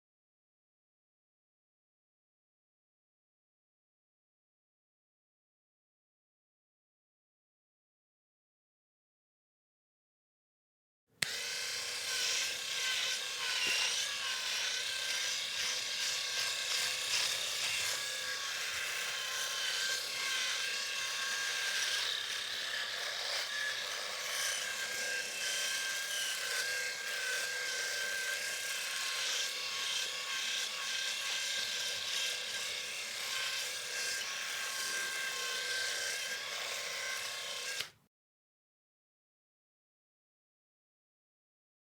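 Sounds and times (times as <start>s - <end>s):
electric razor buzzing: 11.2s - 38.0s.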